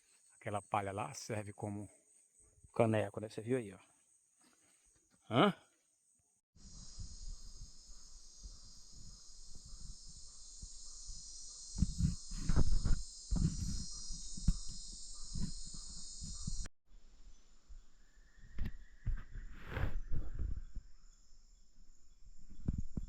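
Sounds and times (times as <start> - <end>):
insects buzzing: 0.0 - 16.7
rustles: 6.7 - 16.7.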